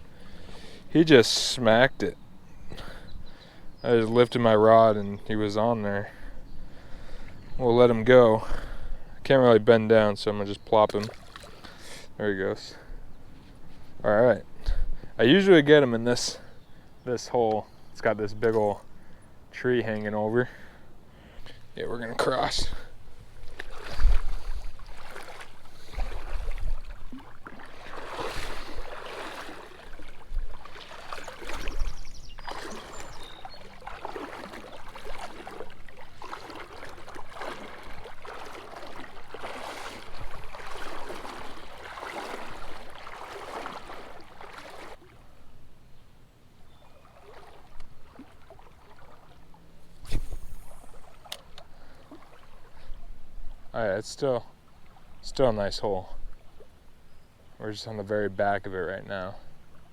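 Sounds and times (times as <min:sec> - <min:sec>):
legs wading through water: 0:00.0 - 0:59.9
water flowing: 0:21.8 - 0:45.4, 0:46.9 - 0:56.7.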